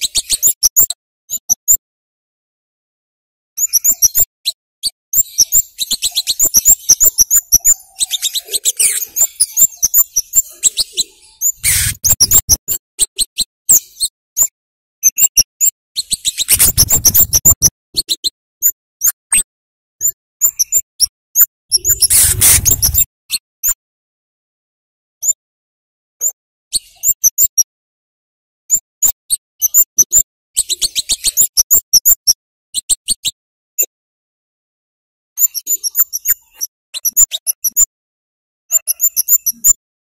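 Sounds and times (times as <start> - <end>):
bird high-pitched chips: 0.0 - 1.8, 3.6 - 14.5, 15.1 - 19.2, 20.0 - 23.8, 26.2 - 27.7, 28.7 - 33.4, 35.4 - 37.9, 38.7 - 39.8.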